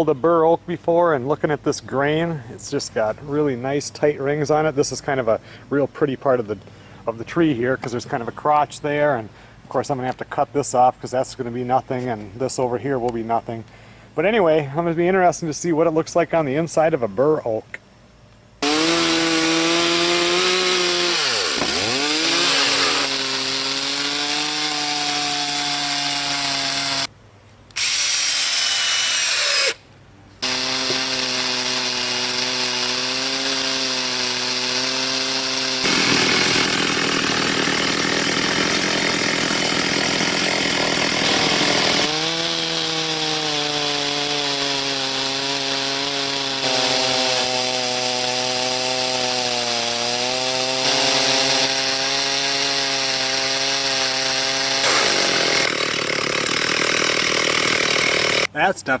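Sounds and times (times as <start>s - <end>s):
chainsaw cutting log: 18.6s - 27.1s, 27.7s - 29.8s, 30.4s - 58.5s.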